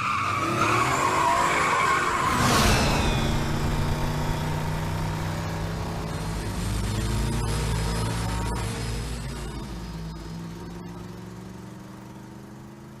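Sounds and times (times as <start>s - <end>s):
car tyres squealing: 0.0s - 9.2s
sudden rush of noise: 2.2s - 6.4s
vehicle engine running: 2.6s - 13.0s.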